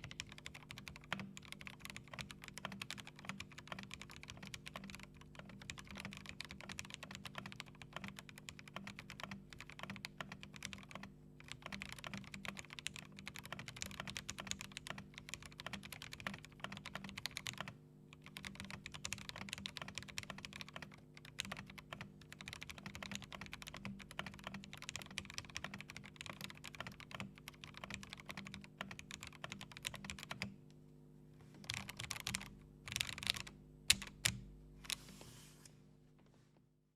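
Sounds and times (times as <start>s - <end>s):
mechanical keyboard typing: 0.0s - 30.5s, 31.6s - 35.0s
faint steady hum: 0.0s - 36.8s.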